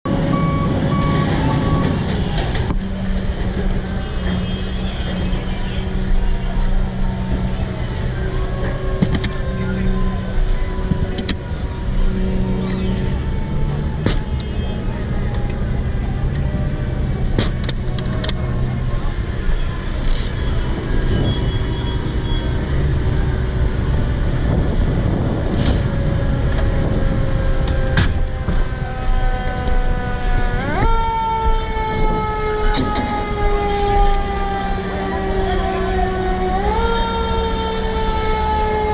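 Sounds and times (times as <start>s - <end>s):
fire truck engine running: 0.0s - 38.9s
high warning beeps: 0.3s - 2.0s.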